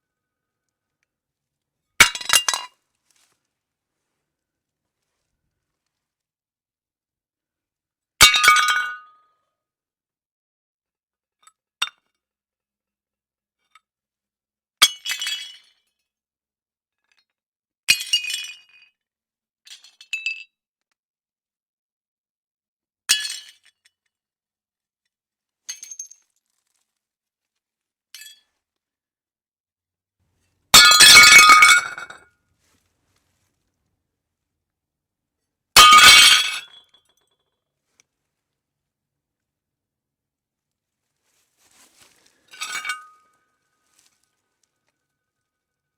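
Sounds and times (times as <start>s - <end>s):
plates smashing: 30.8s - 32.2s, 35.8s - 36.6s.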